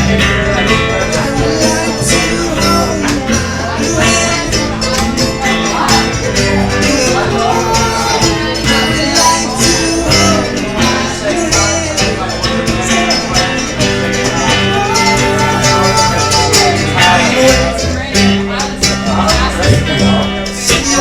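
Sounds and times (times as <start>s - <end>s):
acoustic bluegrass band playing: 0.0s - 21.0s
guitar strumming: 0.0s - 21.0s.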